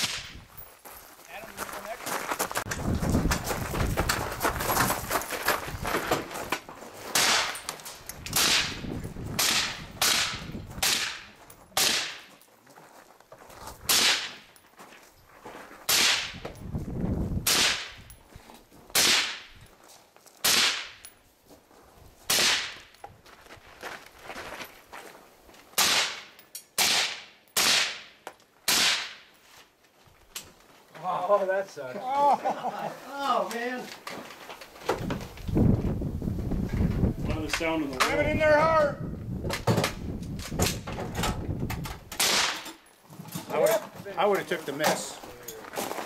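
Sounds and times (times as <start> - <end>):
rifle shots: 7.1 - 7.6, 8.3 - 8.8, 9.4 - 12.3, 13.9 - 14.4, 17.4 - 18.0, 19.0 - 19.5, 20.4 - 21.0, 25.8 - 28.1, 28.7 - 29.2, 42.2 - 42.6.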